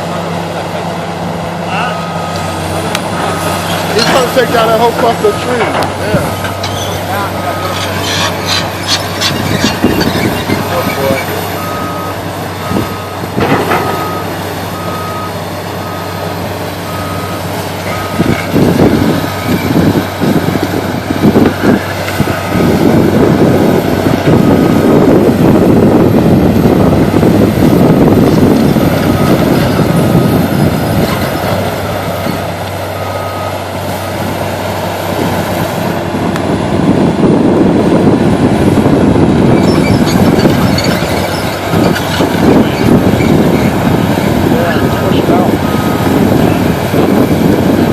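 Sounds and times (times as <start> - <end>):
excavator engine running: 0.0 - 47.9
reversing alarm beeping: 1.8 - 2.6, 3.2 - 5.6, 9.2 - 18.3, 29.1 - 30.7, 44.7 - 47.3
crunching and clattering: 7.6 - 11.3, 13.4 - 14.2.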